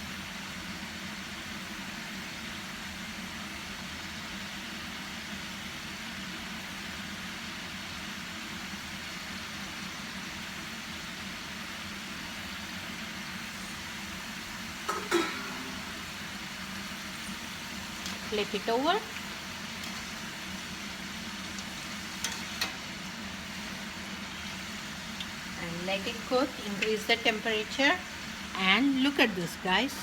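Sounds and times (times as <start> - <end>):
dough sizzling in hot oil: 0.0 - 30.0
low steady hum: 12.7 - 30.0.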